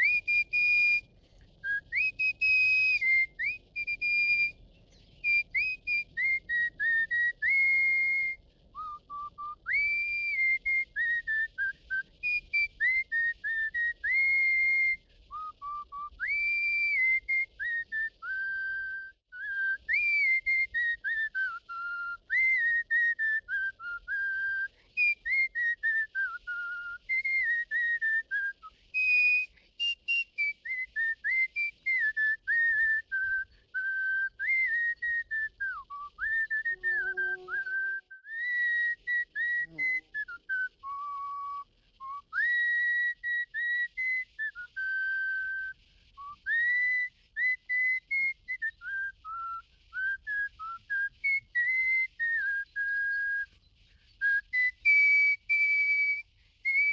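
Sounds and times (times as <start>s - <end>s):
person whistling a tune: 0.0s - 53.6s, 54.2s - 56.9s.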